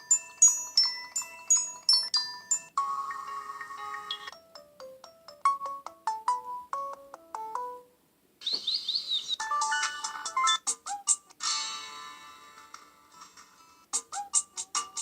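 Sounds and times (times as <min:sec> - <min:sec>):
ringtone with high chirps: 0:00.0 - 0:07.0, 0:09.2 - 0:10.8
ringtone melody of decaying notes: 0:00.0 - 0:07.9, 0:09.4 - 0:10.8.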